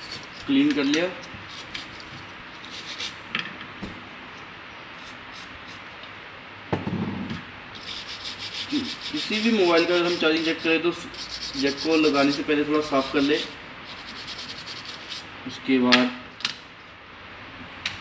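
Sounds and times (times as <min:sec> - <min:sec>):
brush scrubbing circuit board: 0:00.0 - 0:00.5, 0:01.5 - 0:03.2, 0:07.8 - 0:15.3.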